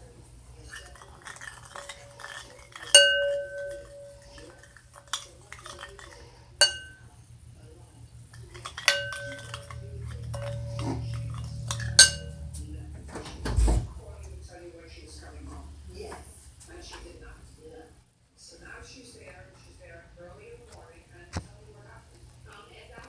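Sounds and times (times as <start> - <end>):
spoon stirring in a bowl: 0.5 - 7.0, 8.2 - 12.6
spoon clinking on a bowl: 0.7 - 7.0, 8.3 - 12.6.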